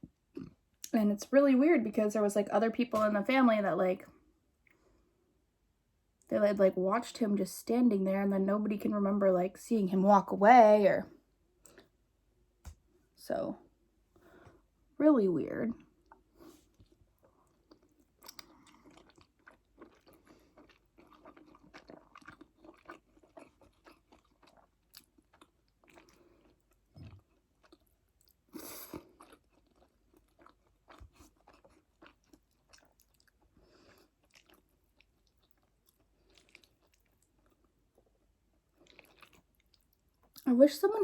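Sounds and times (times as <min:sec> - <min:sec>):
wet chewing clicks and smacks: 0:16.8 - 0:28.4, 0:29.0 - 0:38.1, 0:38.7 - 0:40.4.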